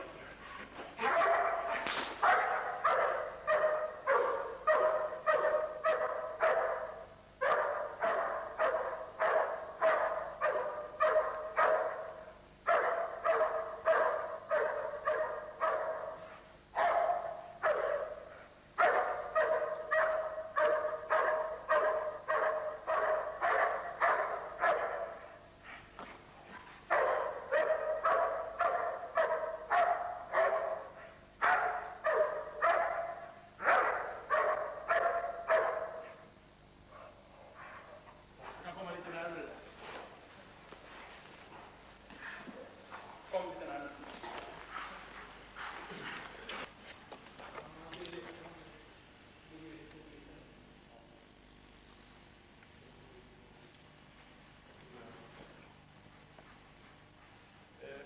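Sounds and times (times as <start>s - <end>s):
large dog barking: 0.0s - 25.5s, 26.5s - 36.3s, 36.9s - 38.3s.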